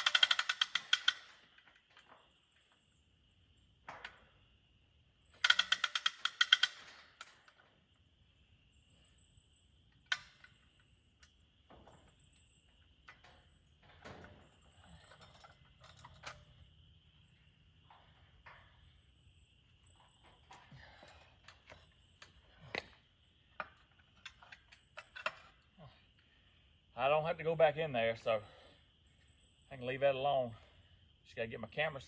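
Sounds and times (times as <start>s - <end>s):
ratcheting clicks: 0.0s - 1.3s, 5.4s - 6.9s.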